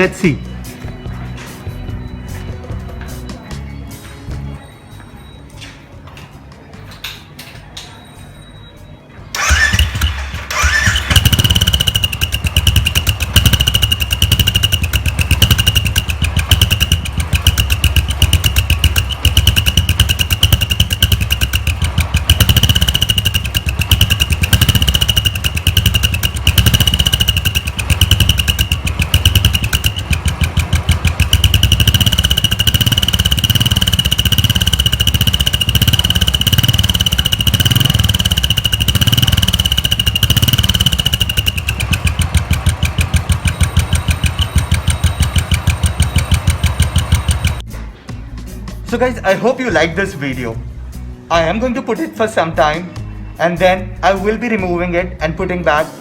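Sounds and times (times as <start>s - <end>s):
motorcycle engine starting and running: 9.3s - 47.7s.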